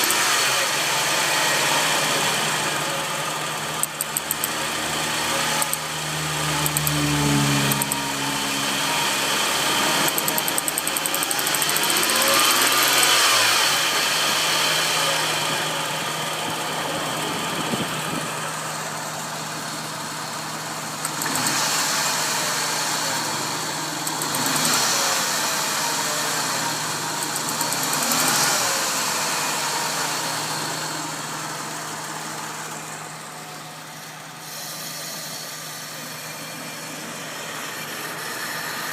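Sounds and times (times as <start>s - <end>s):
car engine revving: 0.0s - 38.9s
noise under car hood: 0.0s - 38.9s
rapid ticking: 10.1s - 12.9s.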